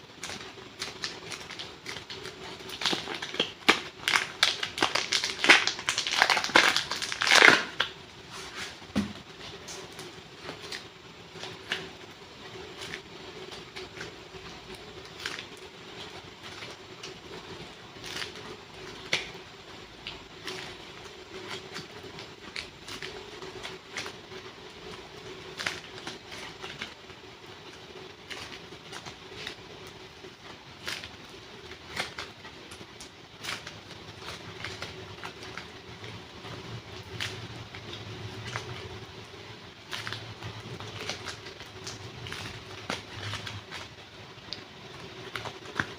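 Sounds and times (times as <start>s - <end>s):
steady low hum: 0.0s - 45.9s
sticky clay clicks and pops: 0.2s - 8.0s, 12.7s - 19.4s.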